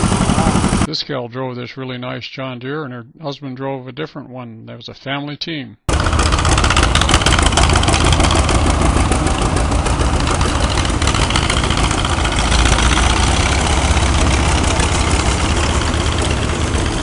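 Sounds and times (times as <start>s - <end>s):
tractor engines idling: 0.0s - 0.9s, 5.9s - 17.0s.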